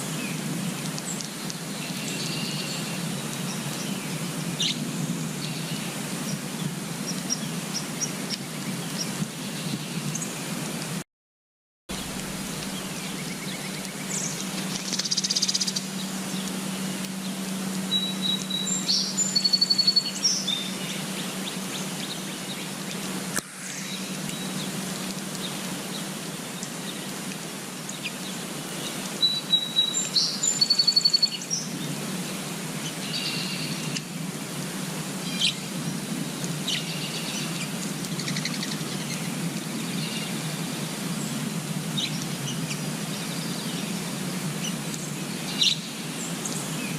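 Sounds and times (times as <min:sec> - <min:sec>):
small birds chirping: 0:11.9 - 0:23.1, 0:23.7 - 0:34.1, 0:35.2 - 0:46.9
outdoor hiss: 0:11.9 - 0:46.9.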